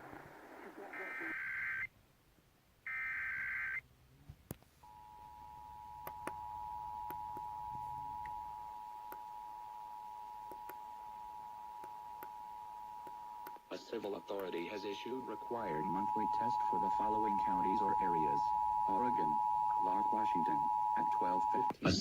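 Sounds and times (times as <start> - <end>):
faint static clicks: 0.0 - 21.8
digital header warble: 13.8 - 22.0
two-tone attention signal: 14.2 - 22.0.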